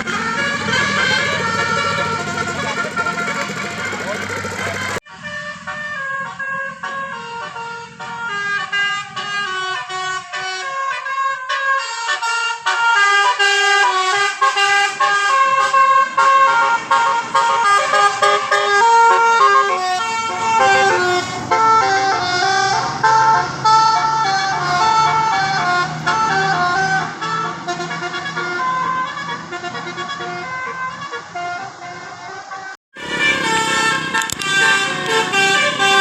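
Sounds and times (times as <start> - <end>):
low engine rumble: 0.0 - 10.0, 33.0 - 36.0
multi-tone bus horn melody: 0.0 - 36.0.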